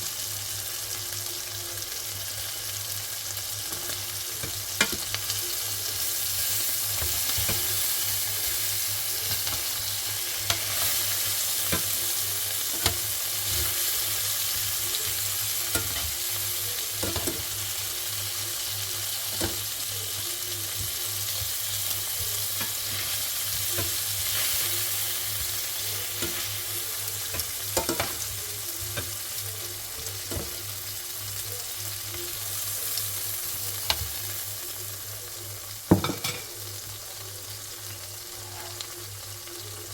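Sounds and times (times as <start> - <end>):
food sizzling in pan: 0.0 - 39.9
utensil tapping pan: 10.4 - 13.9, 20.7 - 29.2.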